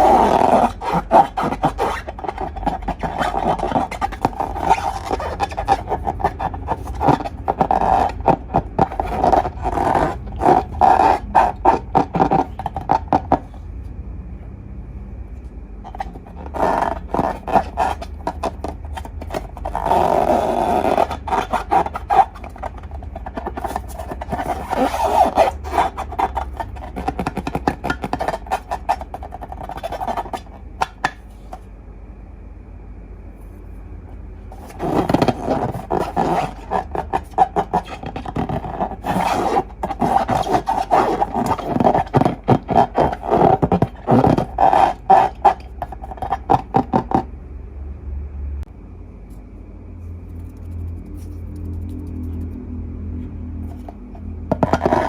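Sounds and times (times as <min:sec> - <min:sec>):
slime squishing and crackling: 0:00.0 - 0:13.4
balloon rubbing squeaks: 0:00.0 - 0:13.6, 0:15.8 - 0:31.6, 0:34.5 - 0:47.3, 0:53.6 - 0:55.0.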